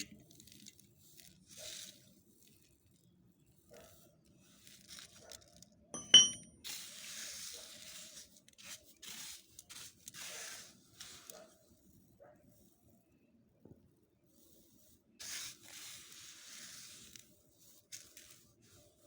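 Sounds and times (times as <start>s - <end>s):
ringing metal or glass clink: 6.0s - 6.5s.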